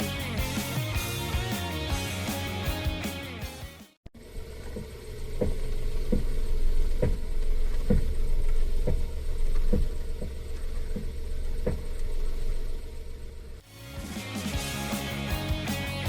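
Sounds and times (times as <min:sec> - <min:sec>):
low engine hum: 0:04.2 - 0:13.6.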